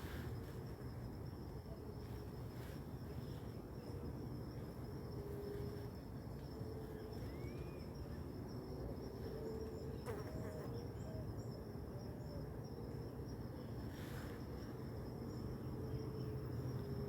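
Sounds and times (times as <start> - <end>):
flying insect buzzing: 10.0 - 10.7.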